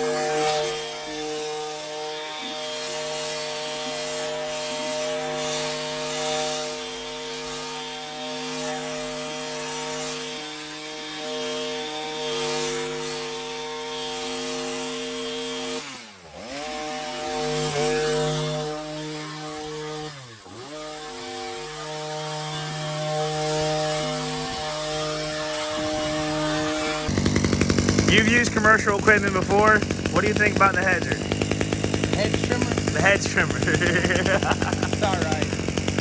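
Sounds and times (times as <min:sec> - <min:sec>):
hedge trimmer engine revving: 0:00.0 - 0:36.0.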